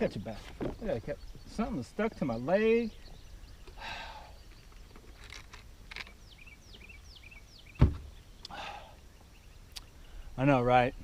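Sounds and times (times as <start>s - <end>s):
bird chirping: 0.0s - 11.0s
light clicks and rustles: 4.5s - 6.2s.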